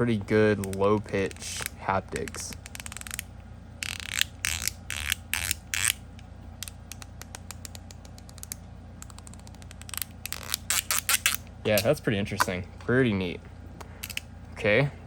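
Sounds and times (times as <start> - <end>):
metal fidget slider clicking: 0.6 - 3.2, 3.8 - 6.0, 14.0 - 14.2.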